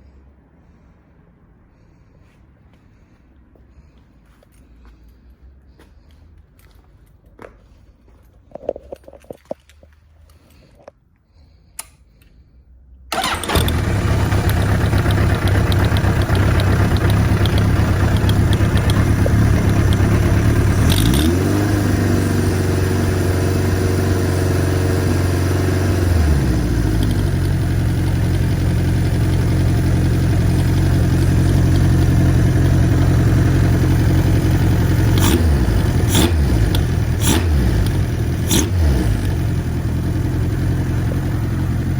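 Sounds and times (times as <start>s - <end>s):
faint clicks: 11.7s - 12.4s
motorcycle engine running: 13.1s - 41.9s.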